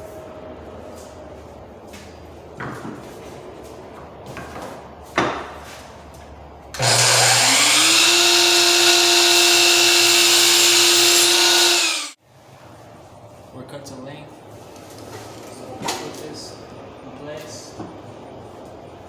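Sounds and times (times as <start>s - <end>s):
electric saw cutting wood: 6.8s - 12.2s.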